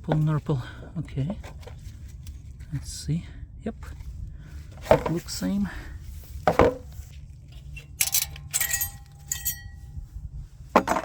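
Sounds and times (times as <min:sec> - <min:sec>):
metal brake pads clinking: 0:07.6 - 0:09.8.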